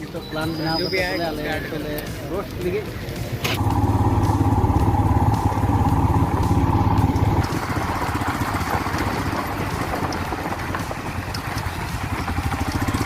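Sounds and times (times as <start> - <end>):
engine running: 3.0 - 13.0.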